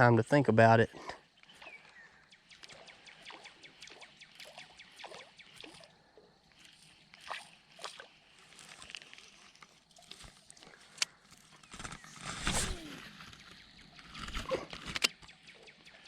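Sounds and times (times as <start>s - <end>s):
lure popping and water sloshing: 1.0s - 11.5s.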